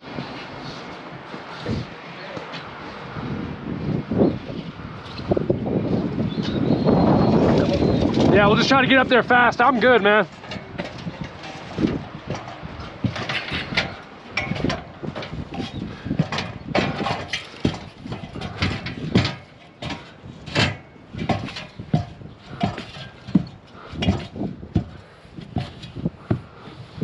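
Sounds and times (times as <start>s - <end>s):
footsteps knocking on metal roof: 10.2s - 26.8s.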